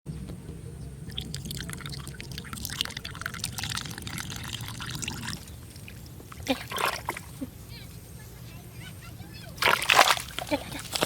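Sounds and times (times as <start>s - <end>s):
water dripping and pouring: 1.1s - 7.2s
small water splashes: 1.1s - 7.4s, 9.6s - 11.0s.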